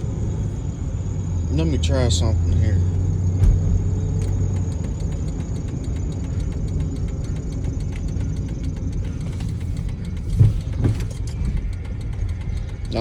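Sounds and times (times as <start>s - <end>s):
car engine and road rumble: 0.0s - 13.0s
turn signal ticking: 0.0s - 13.0s
short thump: 3.3s - 3.9s.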